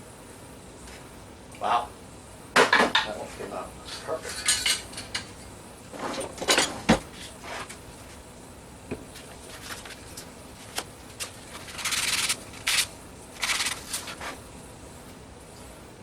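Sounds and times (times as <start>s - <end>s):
rubbing strokes: 9.4s - 14.5s.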